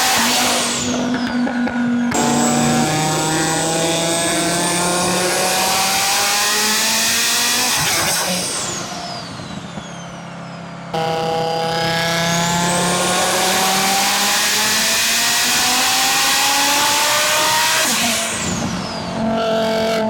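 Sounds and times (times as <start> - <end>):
car engine accelerating: 0.0 - 20.0.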